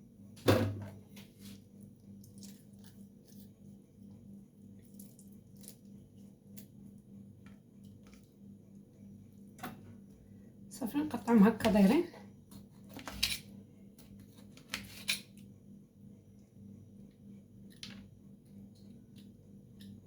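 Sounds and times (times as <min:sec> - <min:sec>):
faint steady hum: 0:00.0 - 0:20.0
knife tapping and juicy squishes: 0:01.2 - 0:03.6, 0:04.7 - 0:06.8.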